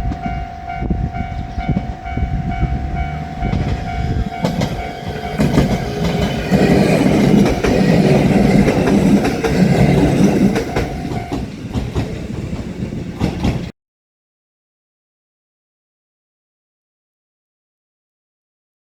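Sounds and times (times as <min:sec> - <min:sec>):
crossing warning bell: 0:00.0 - 0:11.7
train wheels clacking over rail joints: 0:02.6 - 0:13.7.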